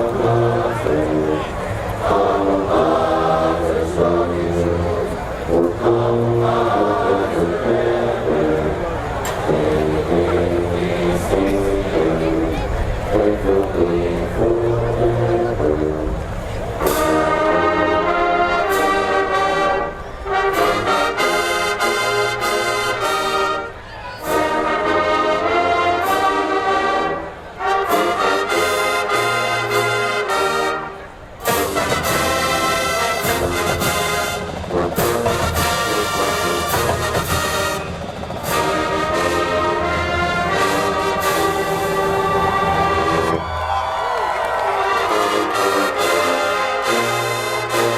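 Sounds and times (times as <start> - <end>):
marching band brass playing: 0.0 - 47.9.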